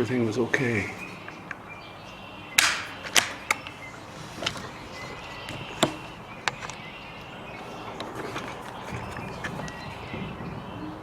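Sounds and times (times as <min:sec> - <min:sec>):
faint bird chirps: 0:00.6 - 0:11.0
sharp knocks and clicks: 0:05.5 - 0:06.8.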